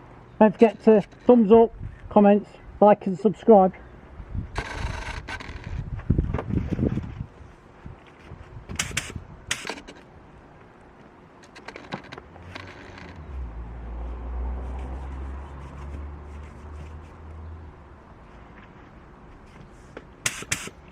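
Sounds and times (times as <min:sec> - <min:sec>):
sharp clicks and knocks: 0:08.7 - 0:10.1, 0:11.0 - 0:13.4, 0:19.6 - 0:20.9
air hiss: 0:20.2 - 0:20.8.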